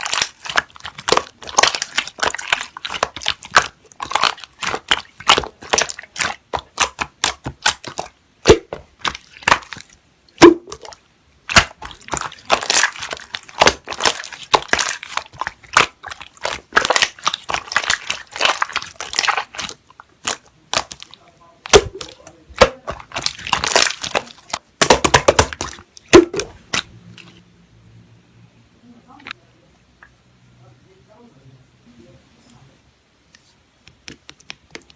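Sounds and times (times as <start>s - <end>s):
slime crackling and popping: 0.0s - 27.3s.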